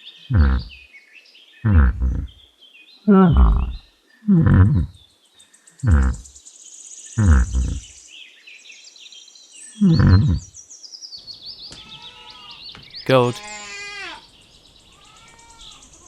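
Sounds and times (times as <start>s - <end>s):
yak grunting: 0.3s - 0.7s, 1.6s - 2.3s, 3.1s - 4.9s, 5.8s - 6.2s, 7.2s - 7.8s, 9.8s - 10.4s.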